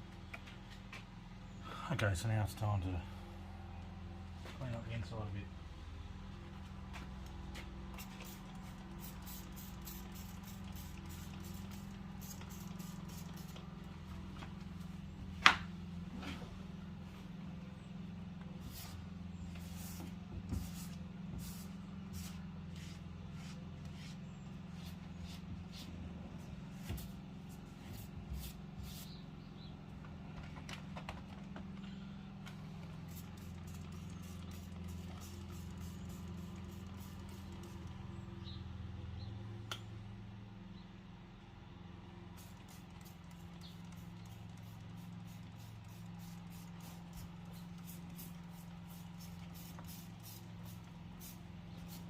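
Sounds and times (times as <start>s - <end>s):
steady low hum: 0.0s - 52.0s
spray bottle squirts: 8.0s - 13.6s, 42.4s - 52.0s.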